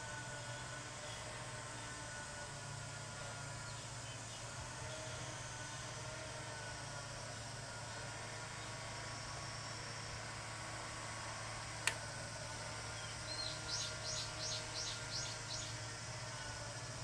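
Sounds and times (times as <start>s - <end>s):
steady low hum: 0.0s - 17.0s
small bird singing: 3.6s - 5.3s, 12.9s - 15.9s
sharp click: 11.8s - 12.0s.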